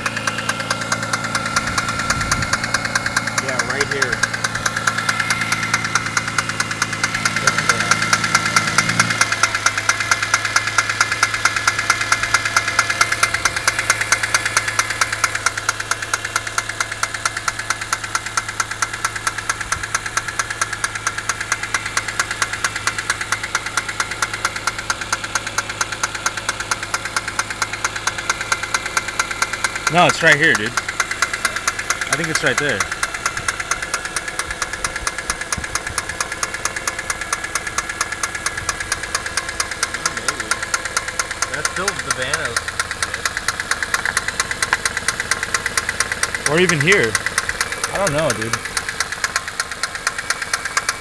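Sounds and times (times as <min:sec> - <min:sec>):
engine with rattling knock: 0:00.0 - 0:51.0.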